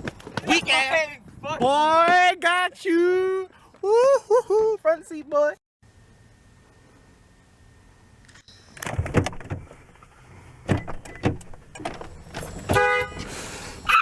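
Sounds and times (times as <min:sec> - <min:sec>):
knocks and thumps inside a car: 0:08.9 - 0:09.8, 0:10.6 - 0:12.9.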